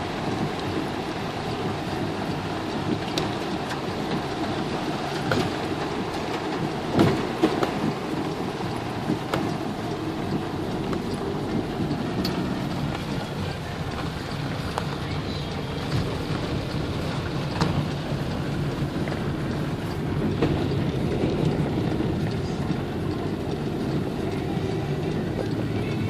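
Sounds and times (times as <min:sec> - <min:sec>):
car driving on wet road: 0:00.0 - 0:26.0
heavy rain on car: 0:00.0 - 0:26.0.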